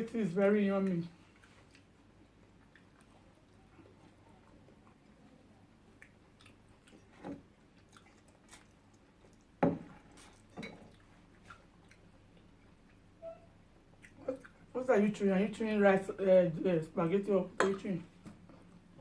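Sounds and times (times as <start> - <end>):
chewing food: 0.8 - 14.7.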